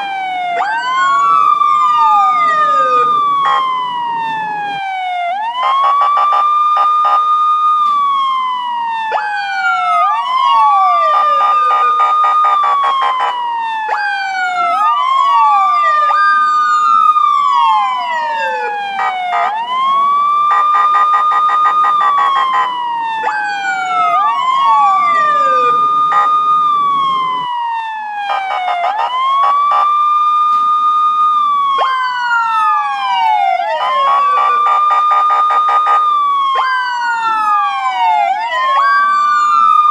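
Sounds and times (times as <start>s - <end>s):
police siren wailing: 0.0s - 39.9s.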